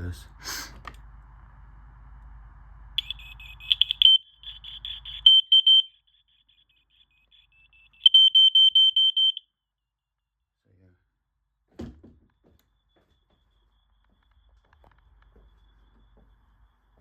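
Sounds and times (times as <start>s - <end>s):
smoke alarm beeping: 3.0s - 9.4s.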